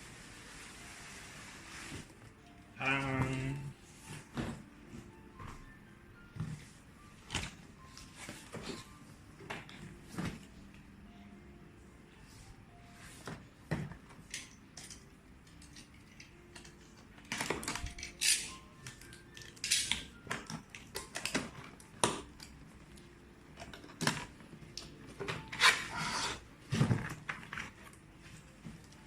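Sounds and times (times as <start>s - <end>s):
packaging rustling and crinkling: 25.1s - 28.9s.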